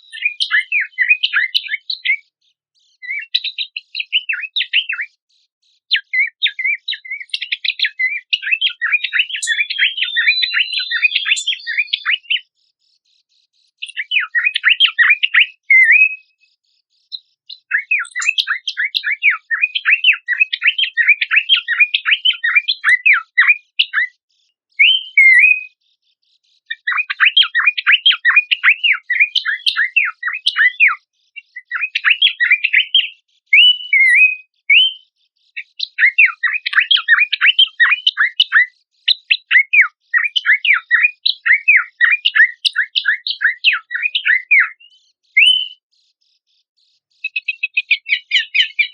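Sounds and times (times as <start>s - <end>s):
bird chattering song: 0.0s - 48.9s
slurred whistled notes: 13.8s - 16.3s, 24.8s - 25.8s, 31.6s - 35.0s, 39.3s - 45.8s.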